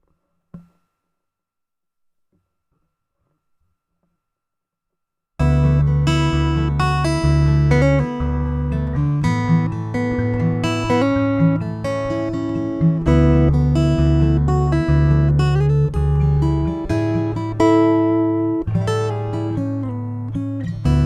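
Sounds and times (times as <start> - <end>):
acoustic guitar picked: 5.4 - 21.0.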